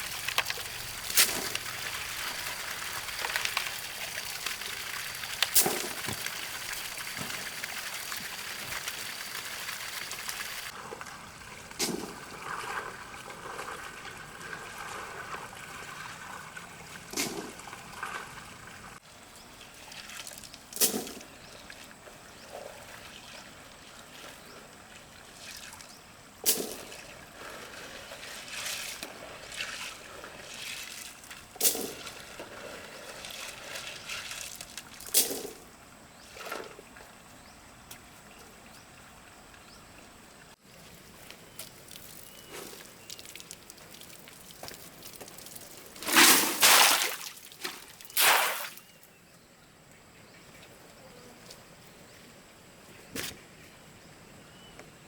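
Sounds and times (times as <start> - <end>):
water trickling: 0.0 - 11.7, 40.7 - 49.0
sharp knocks or splashes: 5.3 - 9.4, 11.8 - 13.8, 44.6 - 48.9.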